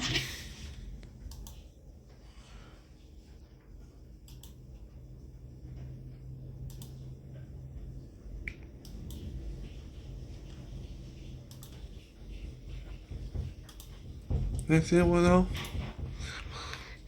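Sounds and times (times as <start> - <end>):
low steady hum: 0.0 - 17.0
sharp clicks: 1.3 - 1.6, 4.3 - 4.6, 6.7 - 7.0.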